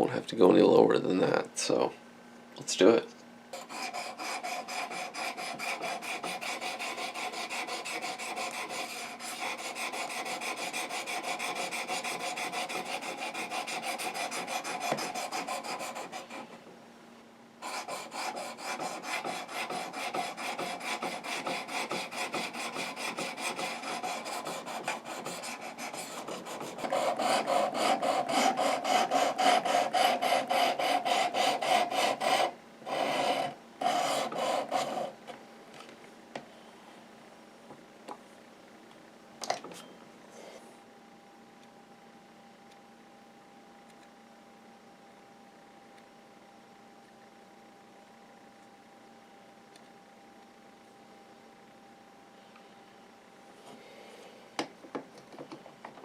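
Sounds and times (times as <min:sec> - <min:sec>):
blade rasping on sharpening stone: 0:17.7 - 0:35.1.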